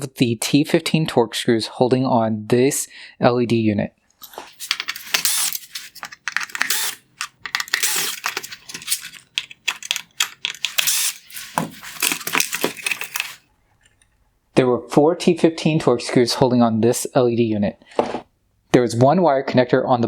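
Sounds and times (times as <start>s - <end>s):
screwdriver clicking and rattling: 4.2s - 13.4s.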